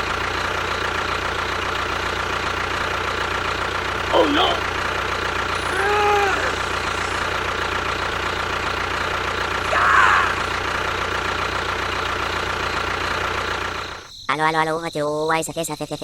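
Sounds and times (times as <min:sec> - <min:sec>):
small motor humming: 0:03.9 - 0:10.8
short pitched vocal sounds: 0:04.1 - 0:04.7, 0:05.5 - 0:07.4.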